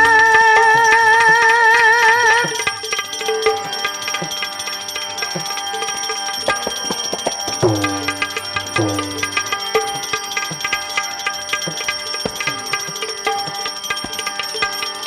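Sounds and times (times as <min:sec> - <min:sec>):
tabla playing: 0:00.0 - 0:15.0.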